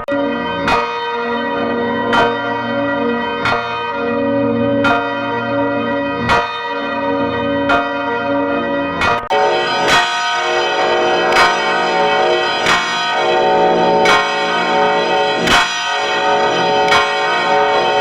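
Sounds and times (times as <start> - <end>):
church bell tolling: 0.0 - 18.0.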